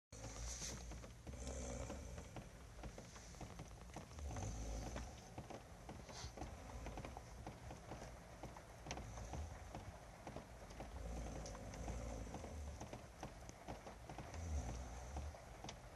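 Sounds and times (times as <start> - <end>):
man snoring: 0.2 - 2.4, 4.2 - 5.2, 11.0 - 12.8, 14.3 - 15.4
faint clicks: 0.2 - 15.9.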